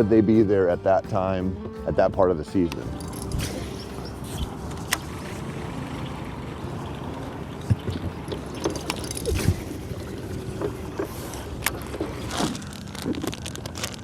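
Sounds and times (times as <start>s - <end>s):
water lapping against boat: 3.0s - 14.0s.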